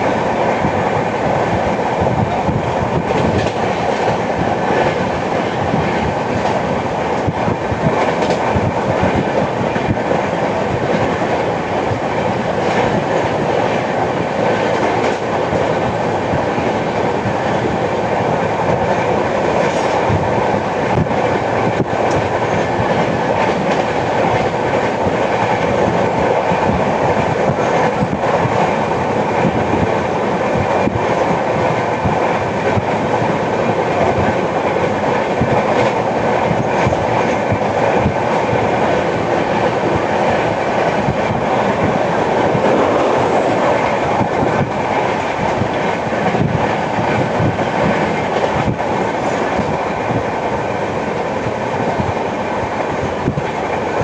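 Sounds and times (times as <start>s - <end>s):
train wheels clattering on rails: 0.0s - 54.0s.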